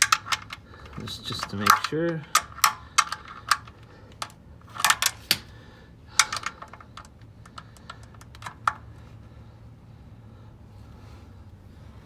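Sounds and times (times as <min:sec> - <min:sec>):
torque wrench clicking: 0:00.0 - 0:05.5.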